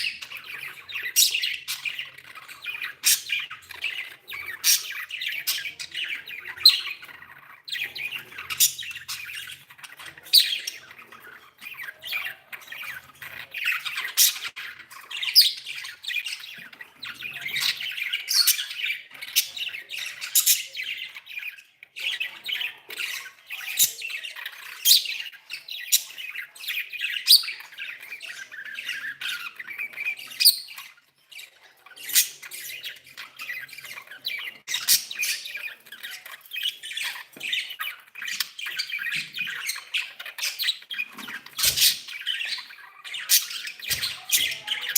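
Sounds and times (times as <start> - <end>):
budgerigars chattering: 0.0 - 44.9.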